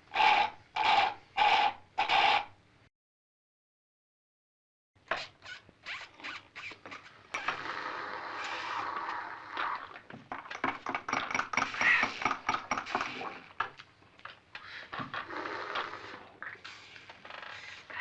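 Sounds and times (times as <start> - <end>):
slurping soda through a straw: 7.4 - 10.1, 15.2 - 18.0.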